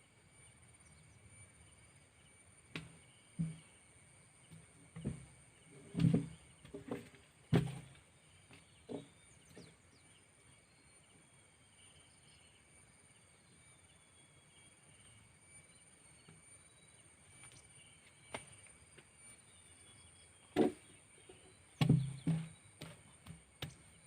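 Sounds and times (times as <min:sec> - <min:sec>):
faint insect drone: 0:00.0 - 0:24.0
sharp knocks: 0:21.8 - 0:23.8.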